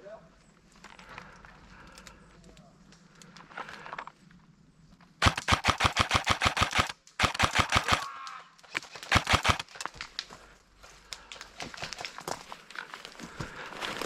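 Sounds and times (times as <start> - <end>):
faint clicks: 0.9 - 4.1
airsoft gun firing bursts: 5.2 - 8.1, 9.0 - 9.8.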